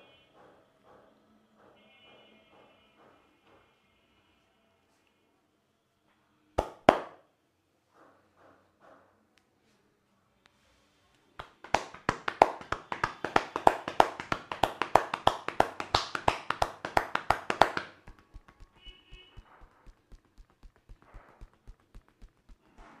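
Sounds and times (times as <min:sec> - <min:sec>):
hands striking head in massage: 0:06.6 - 0:07.2, 0:11.4 - 0:23.0.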